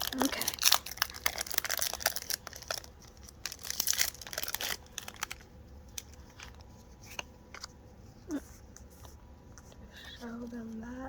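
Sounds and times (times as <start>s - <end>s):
foil wrapper crinkling and tearing: 0.0s - 6.6s.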